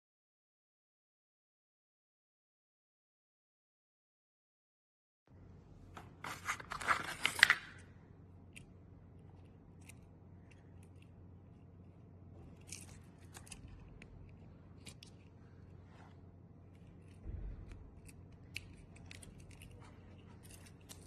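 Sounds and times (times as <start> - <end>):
metal tools clicking and scraping: 18.0 - 21.0.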